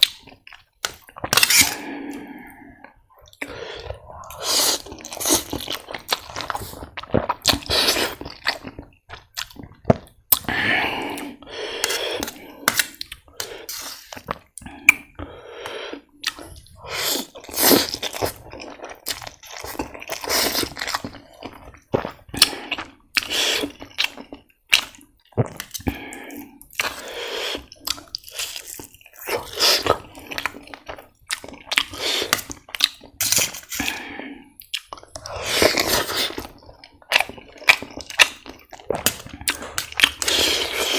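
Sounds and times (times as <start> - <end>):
wet chewing: 0.0 - 40.9
slurping noodles: 1.4 - 2.8, 3.4 - 8.2, 10.5 - 12.8, 22.4 - 23.8, 29.2 - 30.9, 31.8 - 32.6, 35.2 - 37.7, 39.0 - 40.9.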